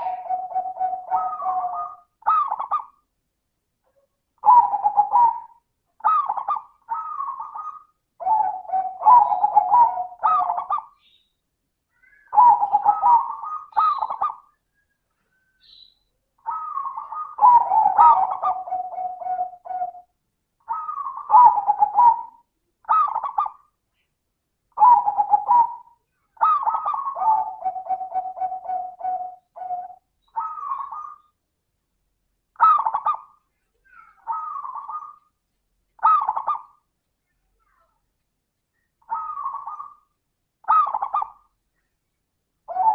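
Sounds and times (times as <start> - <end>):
dove cooing: 0.0 - 3.0, 4.4 - 10.9, 12.3 - 14.5, 16.4 - 20.1, 20.7 - 23.6, 24.8 - 31.3, 32.6 - 33.3, 33.9 - 35.3, 36.0 - 36.8, 39.0 - 41.5, 42.7 - 42.9.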